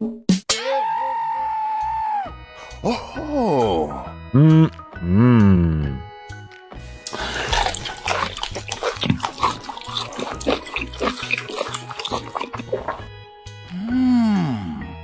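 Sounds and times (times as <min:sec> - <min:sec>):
wet chewing and slurping: 0:07.0 - 0:13.1.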